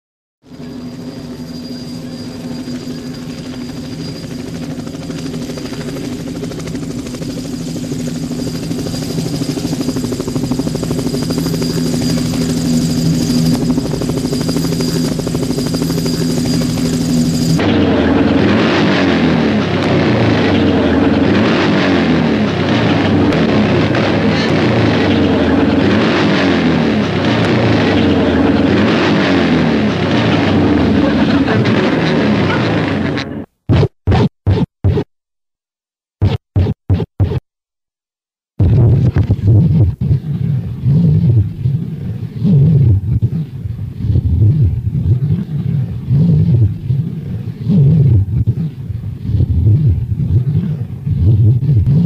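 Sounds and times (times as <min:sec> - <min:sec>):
helicopter rotor drone: 0:00.4 - 0:33.5, 0:38.6 - 0:52.0
rough vehicle engine: 0:00.5 - 0:33.6.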